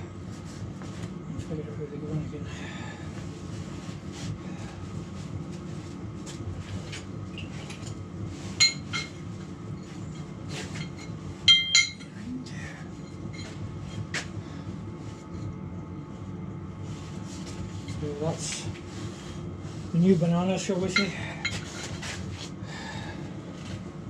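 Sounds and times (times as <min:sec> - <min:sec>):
steady low hum: 0:00.0 - 0:24.0
steel parts clinking: 0:10.8 - 0:12.2.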